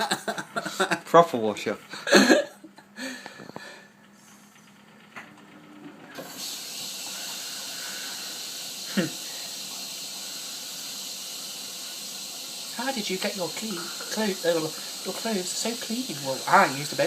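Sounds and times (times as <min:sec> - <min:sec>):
washing machine water inlet opening: 0:04.6 - 0:08.4
water filling hiss: 0:06.1 - 0:17.0.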